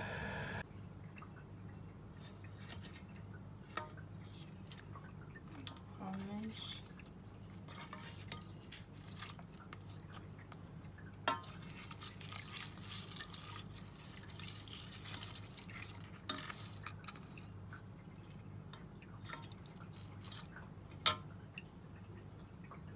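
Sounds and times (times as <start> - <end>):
steady low hum: 0.0 - 0.7.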